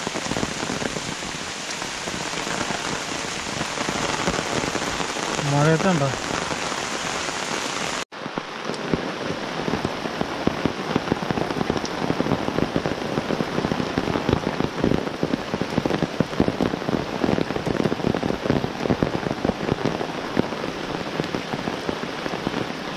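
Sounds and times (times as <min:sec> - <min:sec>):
heavy rain falling: 0:00.0 - 0:22.9
sharp raindrop hits: 0:00.0 - 0:22.9.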